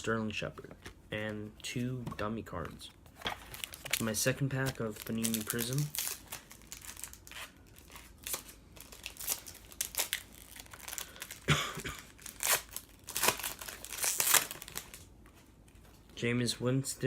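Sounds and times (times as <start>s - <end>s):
wrapper crinkling and tearing: 3.4s - 15.1s.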